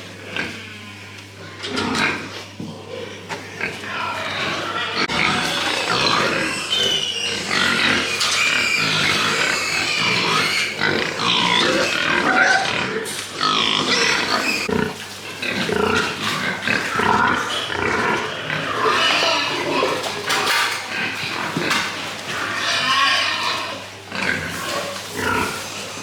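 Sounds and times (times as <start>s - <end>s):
pigs squealing and grunting: 0.0s - 26.0s.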